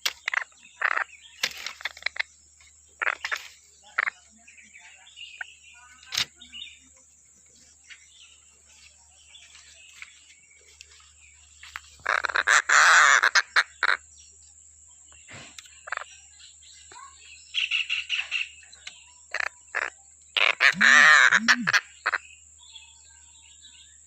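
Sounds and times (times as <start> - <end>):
kingfisher calling: 19.3 - 22.2.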